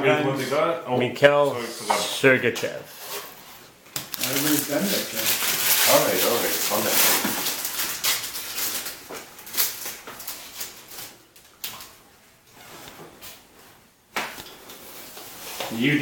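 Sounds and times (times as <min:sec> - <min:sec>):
cards and wrappers rustling: 0:03.0 - 0:12.0.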